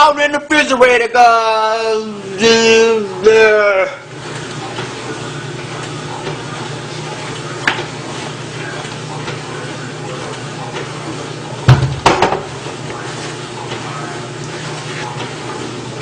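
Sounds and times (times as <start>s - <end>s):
refrigerator hum: 0.0s - 16.0s.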